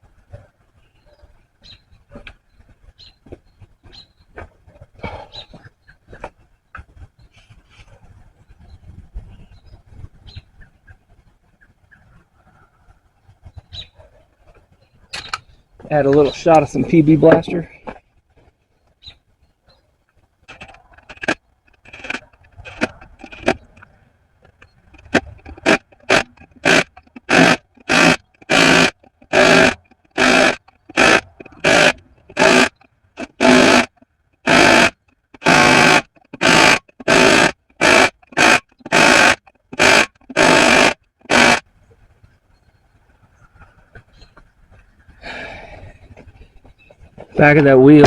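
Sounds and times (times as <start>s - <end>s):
scraping strokes on wheel hub: 20.5s - 41.6s.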